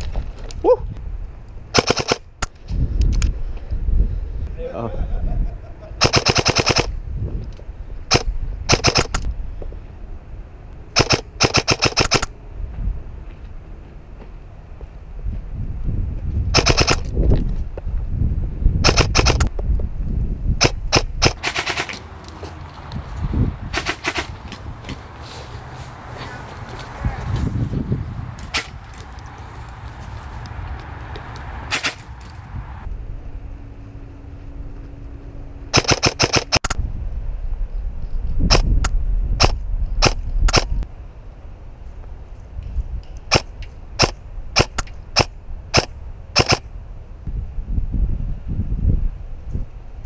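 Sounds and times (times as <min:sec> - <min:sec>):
airsoft guns firing: 0:01.8 - 0:02.3, 0:06.0 - 0:07.0, 0:08.1 - 0:09.3, 0:11.0 - 0:12.3, 0:16.6 - 0:17.0, 0:18.8 - 0:19.5, 0:20.6 - 0:22.0, 0:23.7 - 0:24.4, 0:31.7 - 0:32.0, 0:35.7 - 0:36.8, 0:43.3 - 0:46.6
low rumble: 0:24.4 - 0:50.0.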